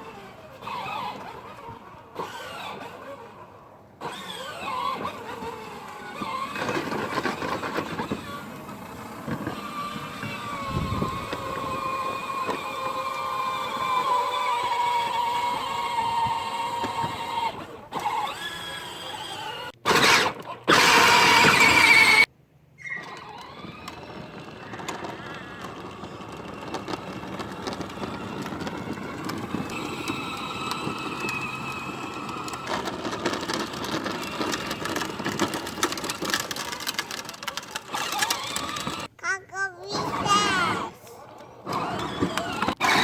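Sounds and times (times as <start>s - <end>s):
toy car electric motor: 0.0s - 43.0s
plastic wheels rattling: 4.0s - 19.2s, 22.8s - 43.0s
loud high squeals: 21.4s - 23.4s.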